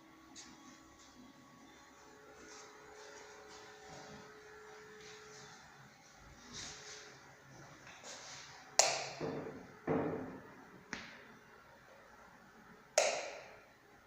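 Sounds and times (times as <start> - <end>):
sharp knocks: 8.8 - 10.4.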